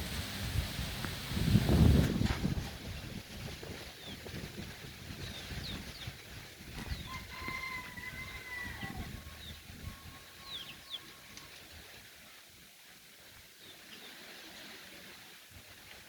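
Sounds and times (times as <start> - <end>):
low wind-like rumble: 0.0 - 12.0
small birds chirping: 4.0 - 4.4, 5.1 - 7.3, 8.7 - 11.6
rooster crowing: 6.8 - 11.5.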